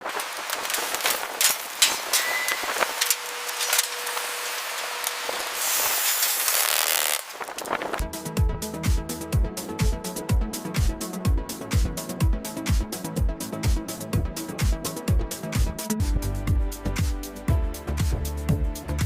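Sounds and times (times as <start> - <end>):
steady spraying hiss: 0.0 - 7.9
electronic dance music: 8.3 - 18.4.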